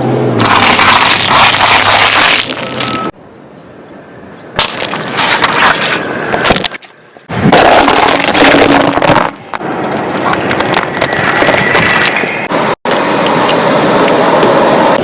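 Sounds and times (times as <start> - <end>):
car crushing objects: 0.4 - 3.1, 4.6 - 9.6.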